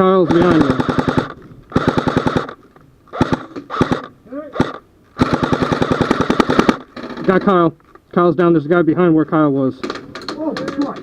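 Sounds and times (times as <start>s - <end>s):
airsoft guns firing bursts: 0.2s - 6.9s.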